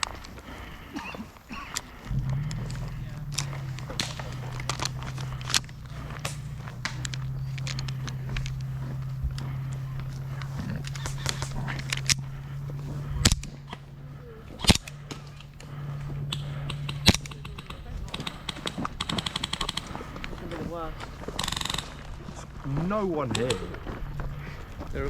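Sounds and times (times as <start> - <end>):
airsoft gunshots: 16.3 - 20.6, 21.4 - 22.2.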